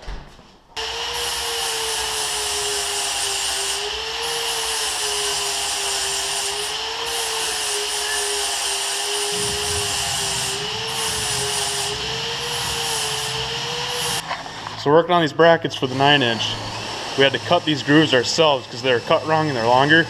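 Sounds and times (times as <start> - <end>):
power tool whining: 0.8 - 14.7, 15.8 - 20.0
low rumble: 9.3 - 14.2.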